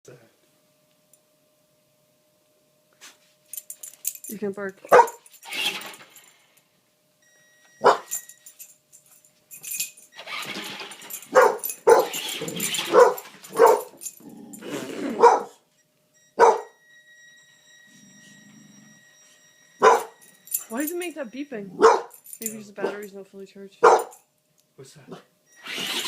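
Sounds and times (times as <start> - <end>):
dog barking: 4.9 - 5.2, 7.8 - 8.2, 11.3 - 12.2, 12.8 - 14.0, 15.2 - 15.6, 16.4 - 16.8, 19.8 - 20.2, 21.8 - 22.2, 22.8 - 23.1, 23.8 - 24.2.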